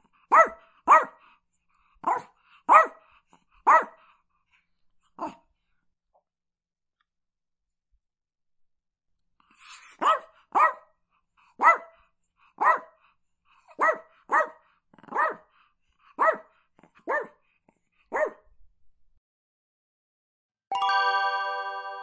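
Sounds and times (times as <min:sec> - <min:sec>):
small dog barking: 0:00.3 - 0:01.3, 0:02.0 - 0:04.0, 0:05.2 - 0:05.4, 0:09.9 - 0:11.0, 0:11.6 - 0:12.0, 0:12.6 - 0:13.0, 0:13.7 - 0:15.5, 0:16.1 - 0:17.4, 0:18.1 - 0:18.5.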